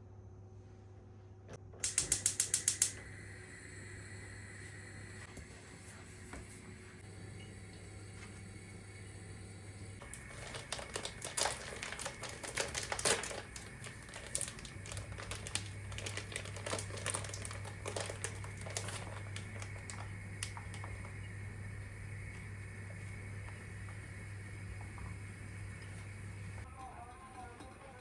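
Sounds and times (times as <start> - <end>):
steady low hum: 0.0 - 28.0
household objects clicking: 1.8 - 3.0.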